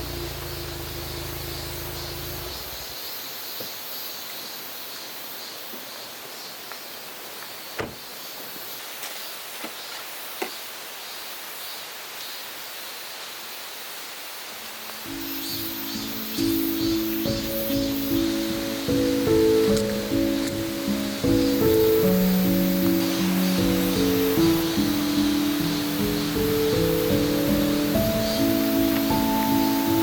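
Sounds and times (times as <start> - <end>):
mountain stream rushing: 18.1 - 30.0.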